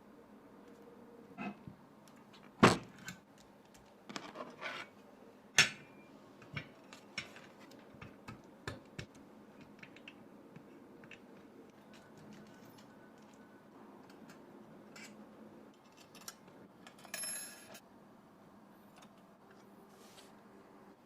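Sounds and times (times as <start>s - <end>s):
keyboard parts clicking and clacking: 6.4s - 17.3s.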